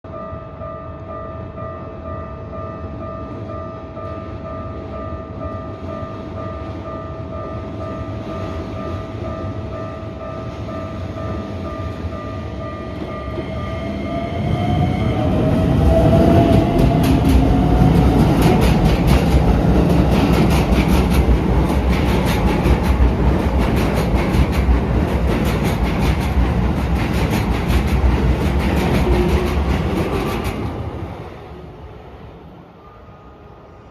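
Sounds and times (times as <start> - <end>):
electric train passing: 0.6 - 33.9
wheels clattering over rails: 15.4 - 30.8.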